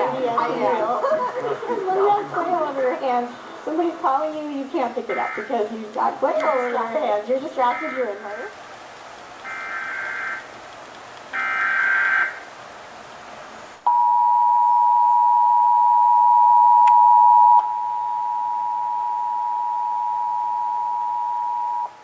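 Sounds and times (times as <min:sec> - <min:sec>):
two-tone alarm: 0:09.5 - 0:10.4, 0:11.4 - 0:12.4, 0:13.9 - 0:22.0.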